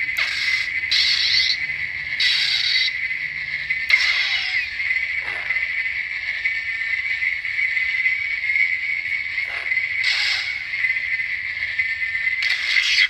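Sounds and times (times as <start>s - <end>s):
buzzing lightsaber hum: 0.0s - 13.0s.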